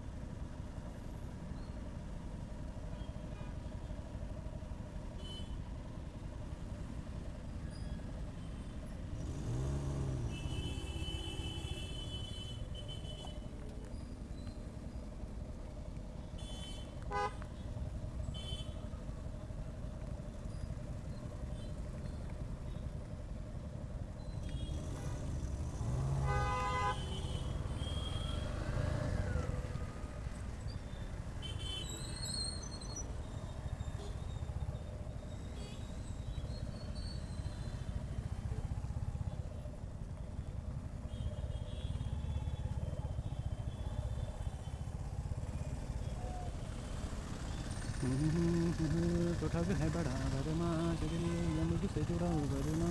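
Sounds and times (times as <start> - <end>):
motorcycle engine and road noise: 0.1 - 52.9
vehicle horns honking: 9.5 - 13.5, 16.4 - 17.4, 18.3 - 18.8, 24.4 - 28.6, 31.4 - 32.0, 48.8 - 52.9.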